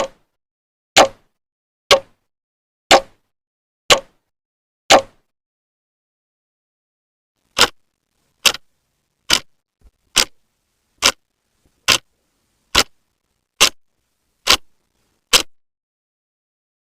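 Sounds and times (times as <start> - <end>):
clock ticking: 7.5 - 7.8, 8.4 - 8.7, 9.3 - 9.5, 10.1 - 10.4, 11.0 - 11.2, 11.8 - 12.1, 12.7 - 13.0.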